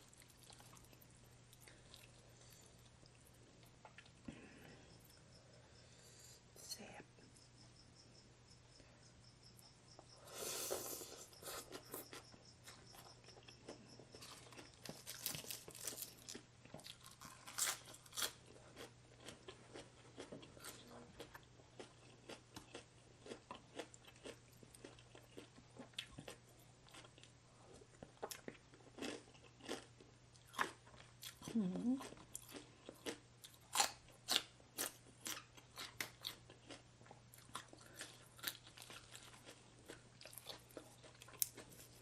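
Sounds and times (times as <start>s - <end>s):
person chewing crunchy food: 0.0s - 5.2s, 10.0s - 42.0s.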